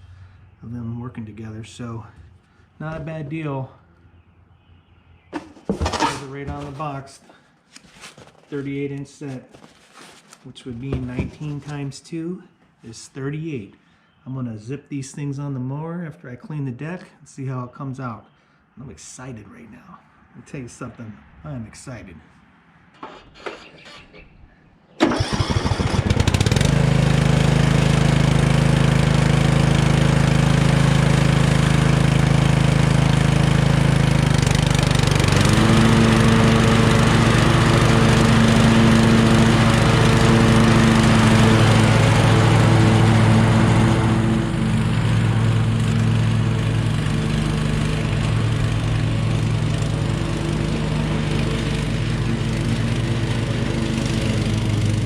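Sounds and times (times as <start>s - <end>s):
riding lawn mower engine running: 4.5s - 6.8s, 25.0s - 55.0s.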